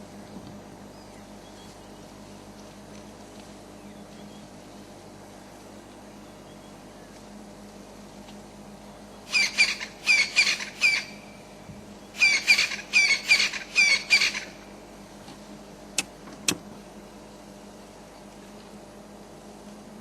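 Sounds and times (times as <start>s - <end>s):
bird squawking: 9.3s - 11.2s, 12.2s - 14.6s
sharp clicks: 16.0s - 16.6s.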